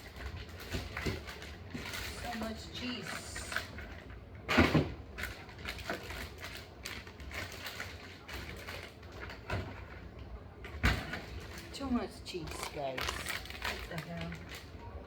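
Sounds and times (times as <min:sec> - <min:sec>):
packages knocking on shelves: 0:04.5 - 0:06.2.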